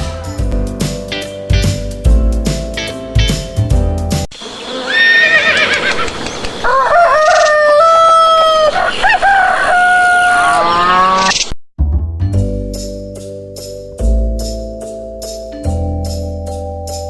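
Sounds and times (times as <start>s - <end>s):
roosters crowing: 4.5s - 11.3s.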